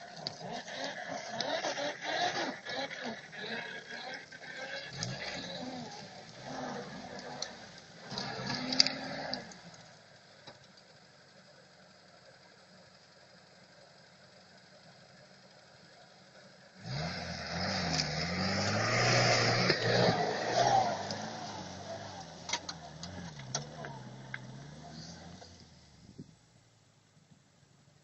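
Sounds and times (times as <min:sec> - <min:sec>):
engine revving: 0:00.0 - 0:10.0, 0:16.8 - 0:26.2
short engine sound: 0:00.0 - 0:26.3.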